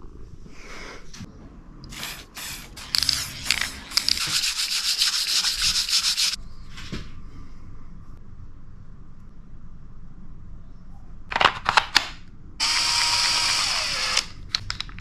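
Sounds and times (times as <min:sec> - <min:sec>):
sandpaper sanding wood: 0:02.0 - 0:06.4.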